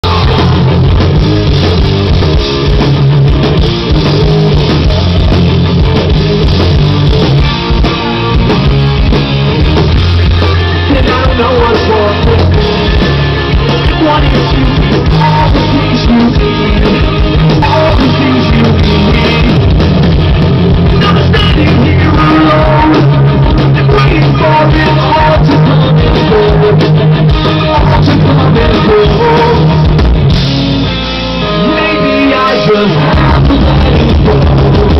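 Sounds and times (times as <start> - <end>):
loud rock music: 0.0 - 34.9.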